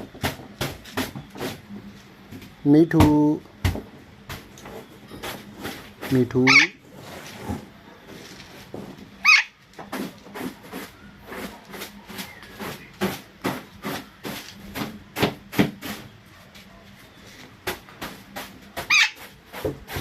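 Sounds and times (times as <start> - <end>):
rough scratchy sounds: 4.7 - 16.7
parrot squawk: 6.4 - 6.8, 9.2 - 9.6, 18.9 - 19.2.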